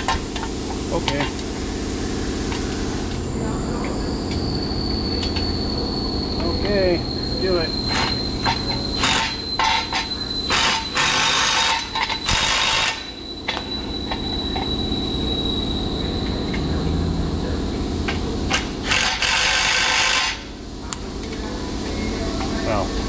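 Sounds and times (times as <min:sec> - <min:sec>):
thin high whine: 0:00.0 - 0:23.0
low hum: 0:01.4 - 0:09.3, 0:13.2 - 0:18.9
impact wrench bursts: 0:06.4 - 0:14.8, 0:18.0 - 0:20.5.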